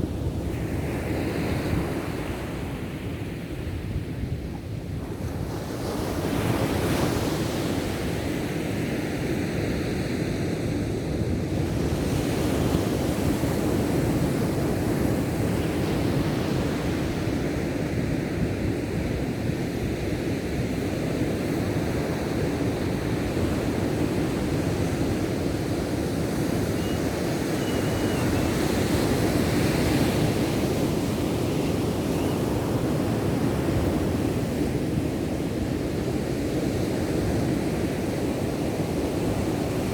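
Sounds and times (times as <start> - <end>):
wind on microphone: 0.0 - 8.3.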